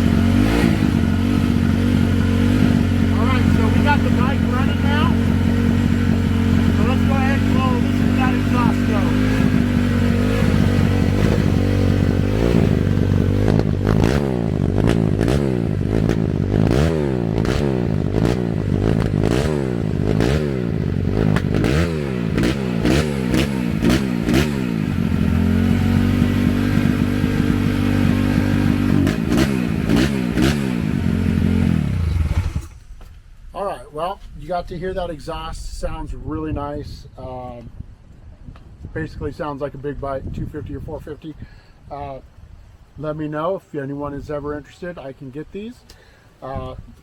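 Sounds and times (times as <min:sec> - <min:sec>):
motorbike engine idling: 0:00.0 - 0:16.8, 0:17.4 - 0:33.1
motorbike engine revving: 0:00.0 - 0:33.8.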